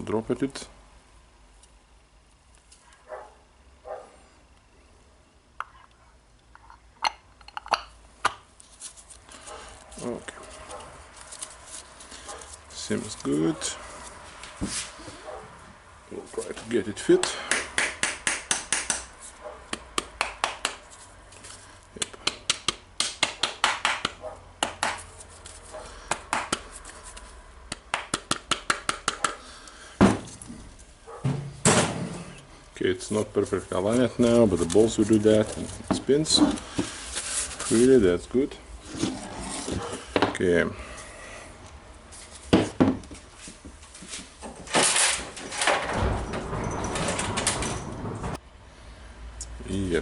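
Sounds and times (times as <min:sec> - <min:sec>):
parts scraping and rubbing: 0:08.6 - 0:15.4, 0:24.9 - 0:27.5, 0:29.3 - 0:38.2, 0:38.8 - 0:40.2, 0:40.9 - 0:48.4
heavy thump: 0:31.2 - 0:32.3.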